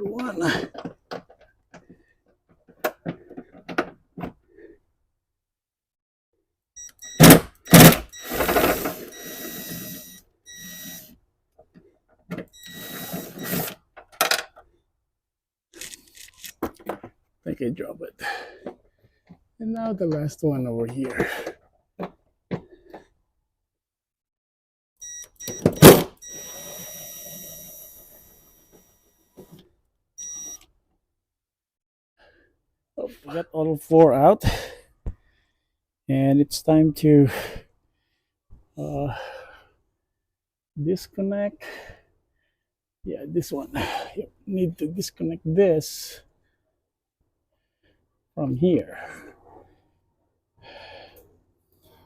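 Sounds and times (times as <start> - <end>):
socket tool whirring and whining: 6.8 - 11.1, 12.6 - 13.8, 25.0 - 29.2.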